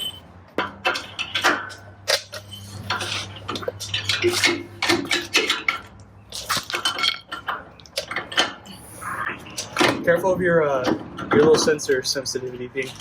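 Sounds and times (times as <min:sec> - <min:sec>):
metal tools clinking: 0:00.0 - 0:08.6.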